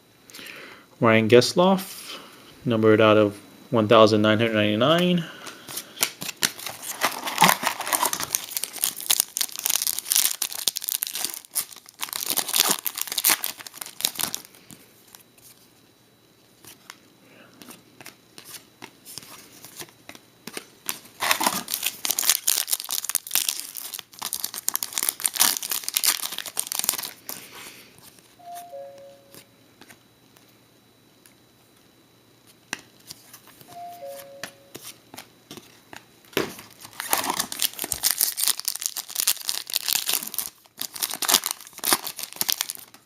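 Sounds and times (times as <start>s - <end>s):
foil wrappers crinkling and tearing: 5.5s - 15.2s, 20.9s - 27.5s, 36.6s - 43.0s.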